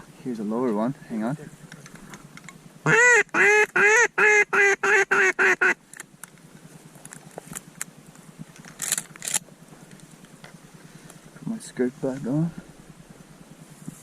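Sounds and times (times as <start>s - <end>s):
waterfowl call blowing: 2.8s - 5.8s.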